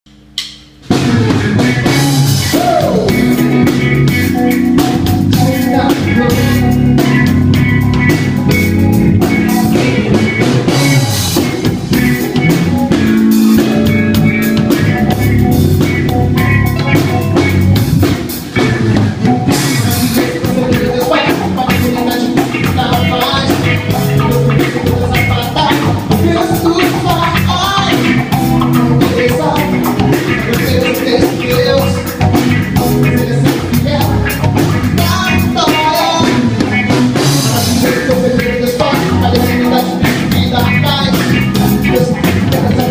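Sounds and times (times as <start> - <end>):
bass: 0.1 - 42.9
drum kit: 0.1 - 42.9
keyboard: 0.1 - 42.9
electric guitar: 0.8 - 42.9
person singing: 0.9 - 7.5, 9.2 - 12.9, 19.2 - 42.9.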